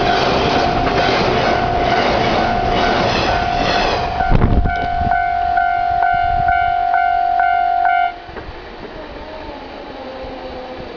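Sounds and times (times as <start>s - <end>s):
level crossing warning bell: 0.0s - 8.2s
train wheels rumbling: 0.0s - 10.9s.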